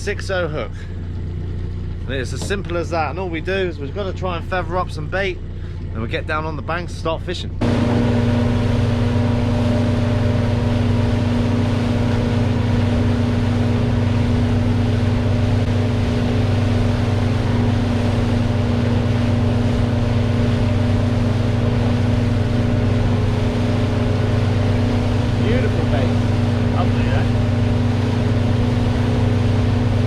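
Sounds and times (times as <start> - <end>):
boat engine humming: 0.0 - 30.0.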